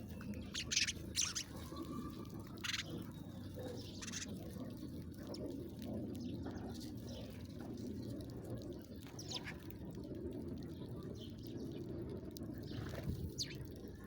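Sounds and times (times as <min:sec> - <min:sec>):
bird chirping: 0:00.0 - 0:01.6, 0:03.8 - 0:04.3.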